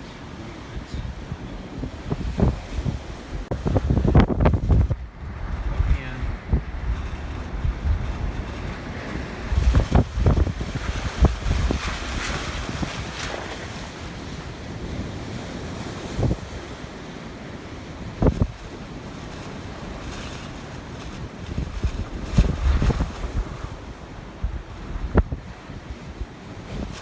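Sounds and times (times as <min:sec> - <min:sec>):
rough surf rushing: 0:00.0 - 0:27.0
wind buffeting microphone: 0:00.0 - 0:27.0
sharp low thumps: 0:01.9 - 0:11.8.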